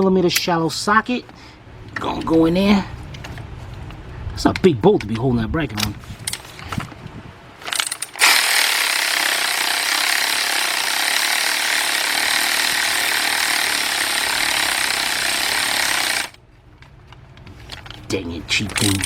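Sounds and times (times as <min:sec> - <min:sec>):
impact wrench hammering: 0:07.8 - 0:16.4.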